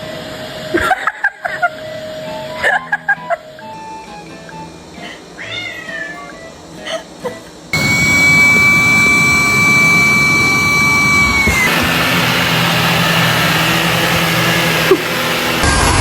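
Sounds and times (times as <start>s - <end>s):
vacuum cleaner running: 0.0s - 16.0s
cat meowing: 5.4s - 6.5s.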